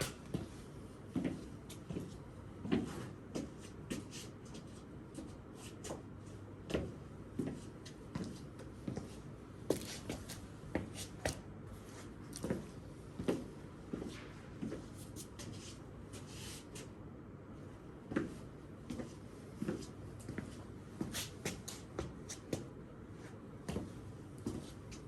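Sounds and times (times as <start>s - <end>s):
knocks and scuffs of person moving: 0.0s - 6.1s.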